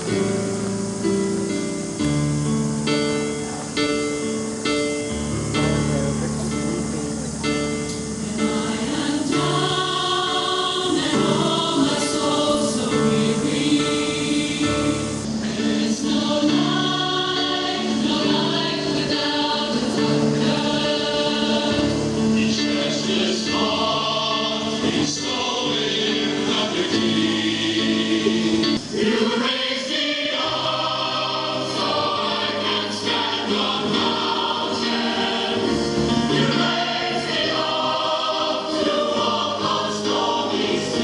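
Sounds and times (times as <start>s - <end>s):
choir singing long held chords: 0.0s - 41.0s.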